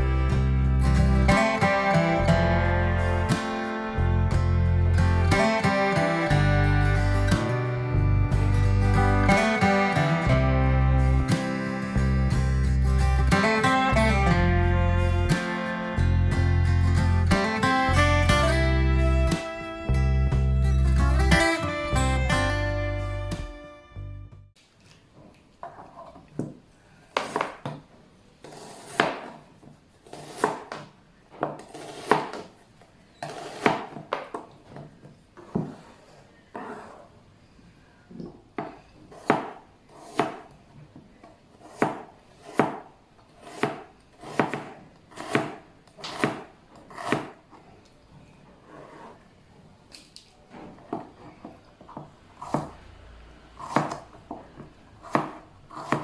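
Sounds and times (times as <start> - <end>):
knife chopping on wooden board: 28.5 - 29.4, 30.1 - 32.5, 33.2 - 34.4, 38.6 - 40.5, 41.6 - 47.4, 52.0 - 52.8, 53.6 - 56.0.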